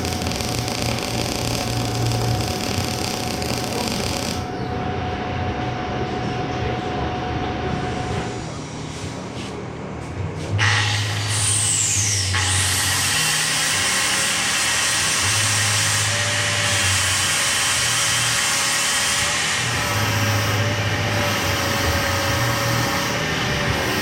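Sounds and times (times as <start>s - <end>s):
low hum: 0.0s - 8.9s
thin wavering whine: 0.0s - 9.0s, 15.2s - 24.0s.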